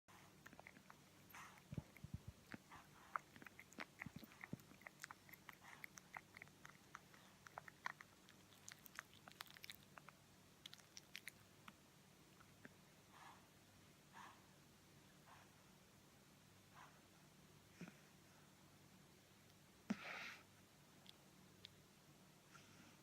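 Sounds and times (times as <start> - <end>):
puppy mouth clicks and smacks: 0.4 - 11.8.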